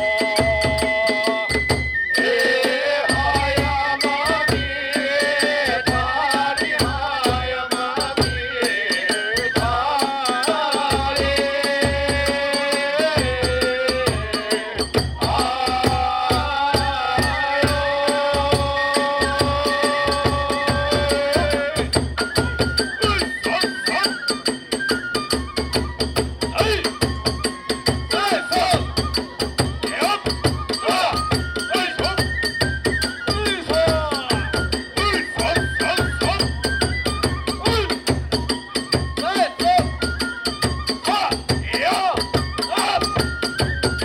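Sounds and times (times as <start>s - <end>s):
bamboo flute melody: 0.0s - 44.0s
taiko drum beats: 0.0s - 44.0s.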